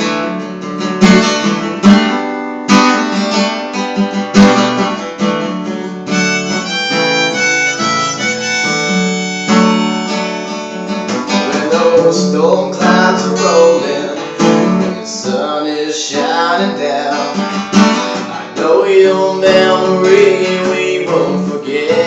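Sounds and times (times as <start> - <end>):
strummed acoustic guitar: 0.0 - 22.0
harmonica playing melody: 6.0 - 11.5.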